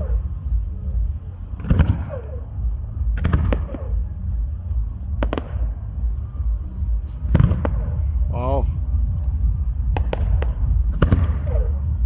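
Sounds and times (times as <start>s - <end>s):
steady low rumble: 0.0s - 12.0s
fireworks bursting with sharp bangs: 3.1s - 4.1s, 5.1s - 5.9s, 9.9s - 12.0s.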